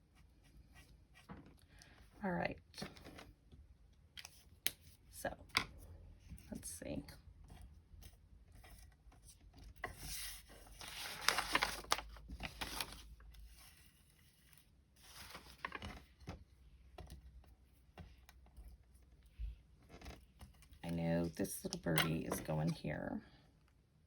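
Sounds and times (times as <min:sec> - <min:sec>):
paper rustling: 0:09.8 - 0:16.4.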